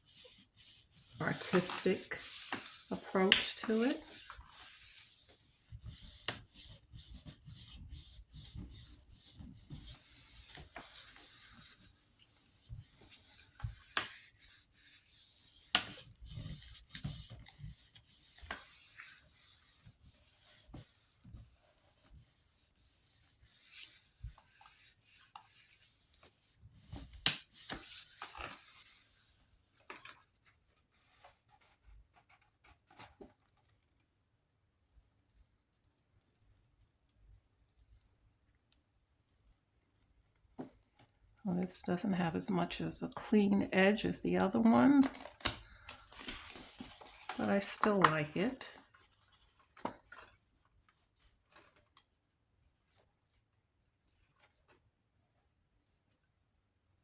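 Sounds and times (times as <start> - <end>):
paper rustling and rubbing: 0.0 - 34.0, 45.0 - 52.0.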